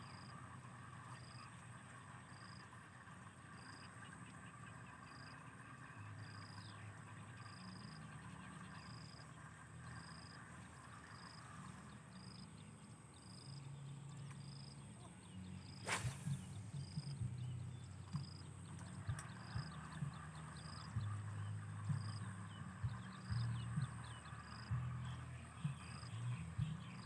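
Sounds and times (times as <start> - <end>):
short high insect chirp: 15.6 - 17.2.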